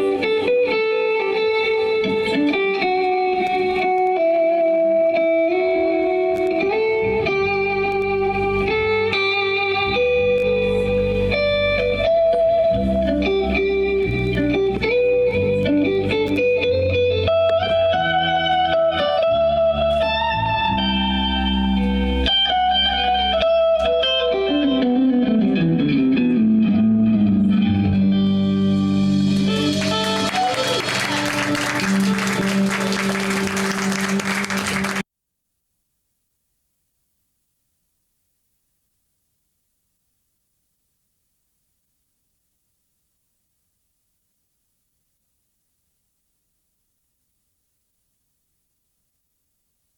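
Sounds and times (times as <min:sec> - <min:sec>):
live band guitar instrumental: 0:00.0 - 0:35.0
bass line: 0:06.6 - 0:35.0.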